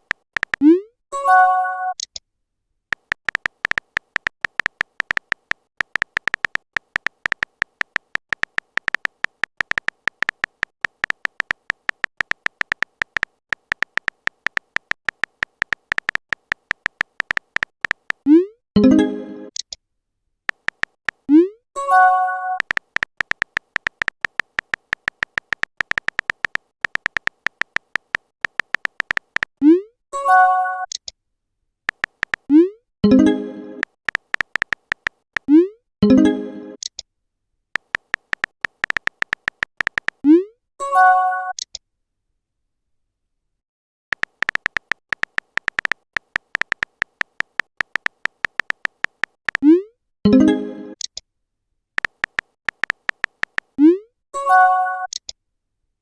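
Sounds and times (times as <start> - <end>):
rapid keyboard tap clicks: 0.0 - 0.6, 2.9 - 18.3, 20.5 - 21.3, 22.6 - 29.6, 31.9 - 32.5, 33.8 - 35.5, 37.8 - 40.2, 44.1 - 49.6, 52.0 - 53.8.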